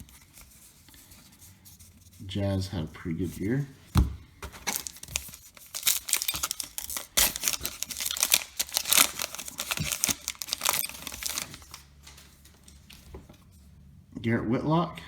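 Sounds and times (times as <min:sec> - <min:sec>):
wrapper tearing and crinkling: 0:04.6 - 0:12.4.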